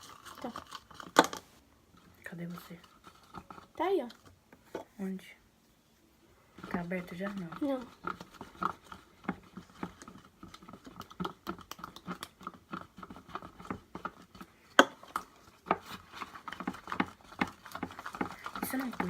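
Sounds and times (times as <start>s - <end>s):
containers tapping and clicking: 6.5s - 19.0s.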